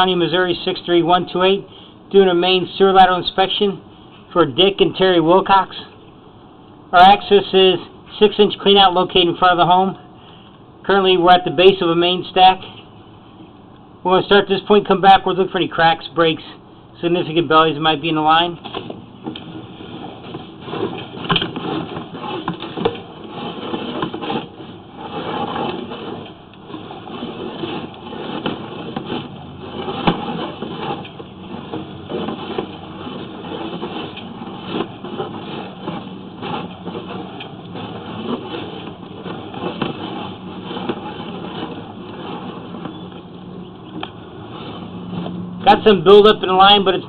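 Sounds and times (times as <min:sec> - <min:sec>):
camera knocking and scraping in pipe: 0:18.3 - 0:45.5.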